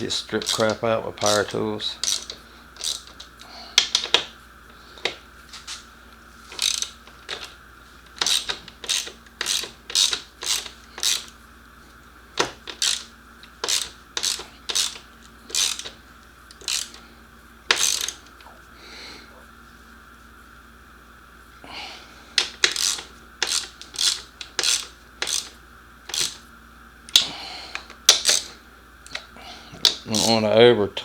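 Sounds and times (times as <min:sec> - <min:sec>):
ratchet wrench clicking: 0:00.1 - 0:04.3, 0:06.4 - 0:07.5, 0:08.1 - 0:11.4, 0:12.4 - 0:17.0, 0:17.7 - 0:18.3, 0:22.4 - 0:26.4, 0:27.1 - 0:30.4.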